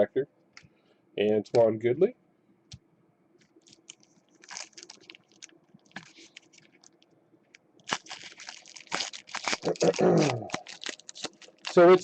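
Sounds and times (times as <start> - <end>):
wrapper rustles: 3.5 - 7.1, 7.8 - 12.0
cards and foil wrappers crinkling: 3.6 - 12.0.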